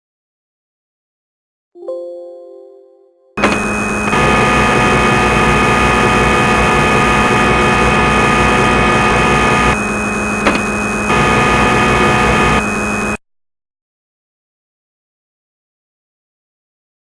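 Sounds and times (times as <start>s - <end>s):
lathe machine hum: 3.4s - 13.2s.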